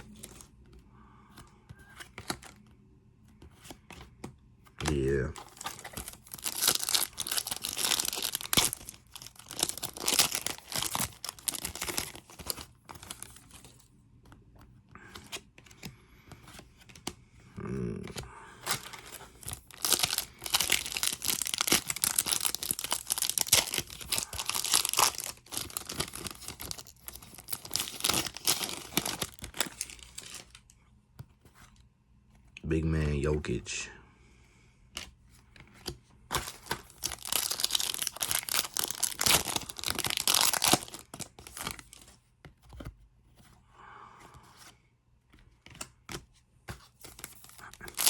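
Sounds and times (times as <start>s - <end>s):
card pack wrappers crinkling: 4.8s - 13.8s, 18.1s - 30.7s, 35.8s - 42.2s, 45.6s - 48.0s.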